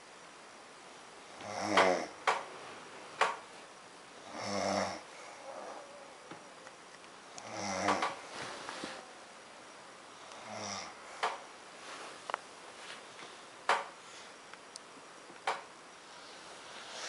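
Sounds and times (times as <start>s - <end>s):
woman snoring: 1.3s - 2.2s, 4.2s - 6.1s, 7.4s - 8.2s, 10.3s - 11.0s.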